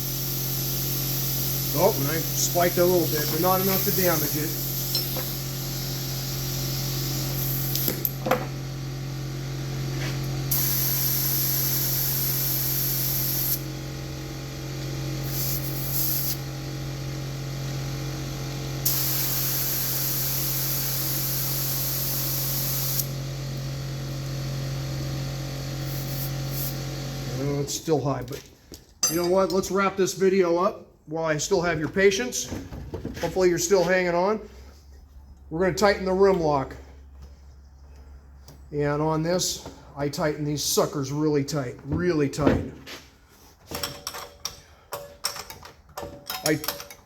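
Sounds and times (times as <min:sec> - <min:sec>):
air hissing from tire valve: 0:00.0 - 0:08.1, 0:10.5 - 0:13.6, 0:15.2 - 0:16.4, 0:18.8 - 0:23.1, 0:25.8 - 0:26.9.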